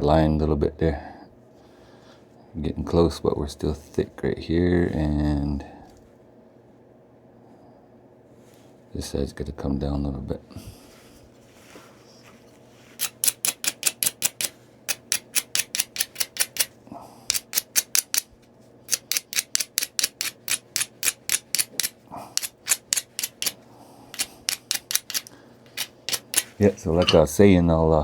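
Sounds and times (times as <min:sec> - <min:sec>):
stone scraping on stone: 0:21.3 - 0:27.3.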